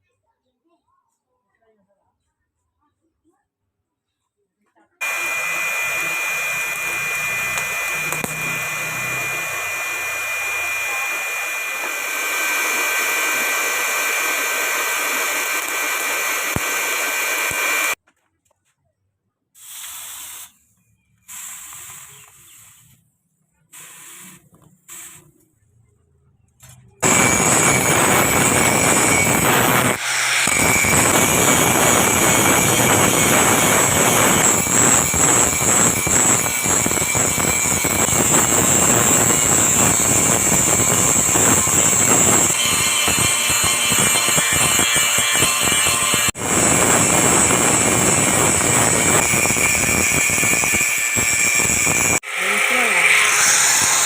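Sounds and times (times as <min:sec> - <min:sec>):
power tool grinding steel: 0:05.0 - 0:18.0, 0:27.0 - 0:54.0.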